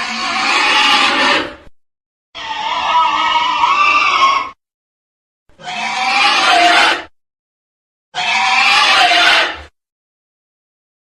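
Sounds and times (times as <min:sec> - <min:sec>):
cartoon dinosaur roar: 0:00.0 - 0:01.6, 0:05.6 - 0:07.1, 0:08.2 - 0:09.7.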